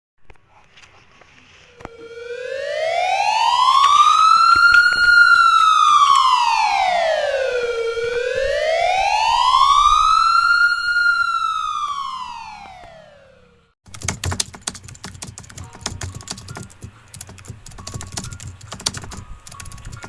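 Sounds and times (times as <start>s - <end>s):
siren wailing: 1.6s - 13.7s.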